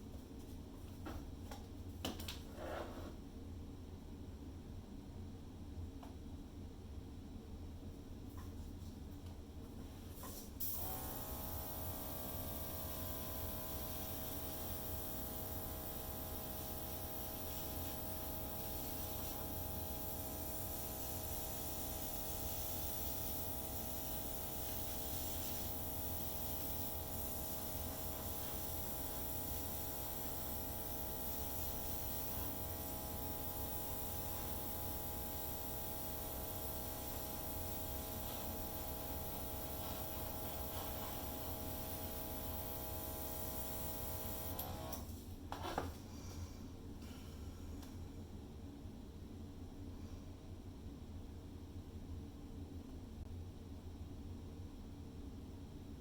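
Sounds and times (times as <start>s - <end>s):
hiss of spraying air: 10.2s - 45.0s
airbrush compressor humming: 10.6s - 45.1s.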